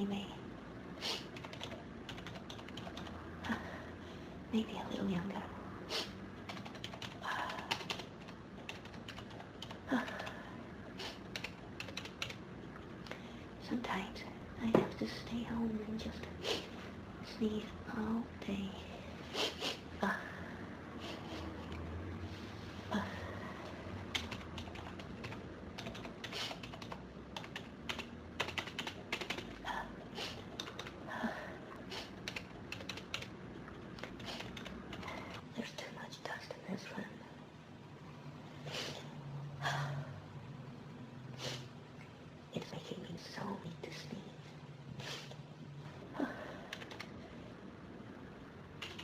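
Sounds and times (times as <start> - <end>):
computer keyboard typing: 1.2 - 3.2, 6.4 - 10.4, 11.1 - 12.4, 24.1 - 29.6, 30.4 - 31.0, 32.0 - 33.4, 34.0 - 35.4, 46.7 - 47.2, 48.8 - 49.0.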